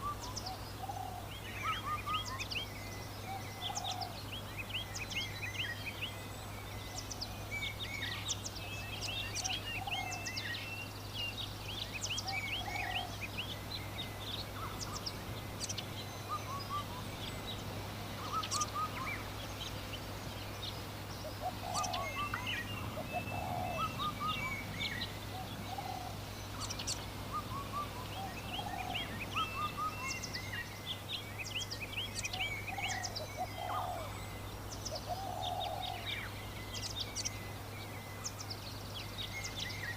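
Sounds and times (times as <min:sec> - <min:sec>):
small birds chirping: 0:00.0 - 0:39.9
lower short bird calls: 0:11.8 - 0:19.7, 0:21.2 - 0:38.5.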